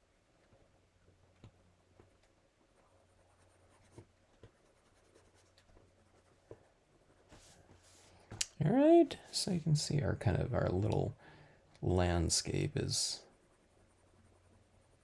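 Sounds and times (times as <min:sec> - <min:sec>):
pencil scratching on paper: 0:02.8 - 0:08.1, 0:12.0 - 0:15.0.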